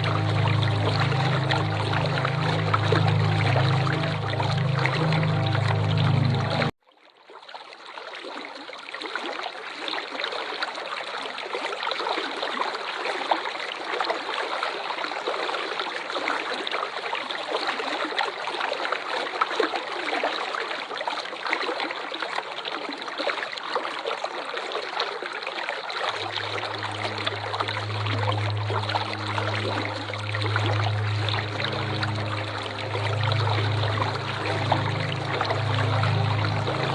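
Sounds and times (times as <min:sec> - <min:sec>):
low steady hum: 0:00.0 - 0:06.7, 0:26.1 - 0:36.9
waterfall rushing and splashing: 0:00.0 - 0:06.7, 0:26.1 - 0:36.9.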